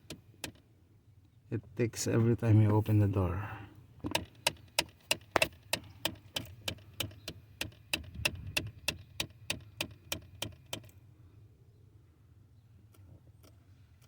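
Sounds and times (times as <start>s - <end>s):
actuator ticking: 4.1s - 10.9s.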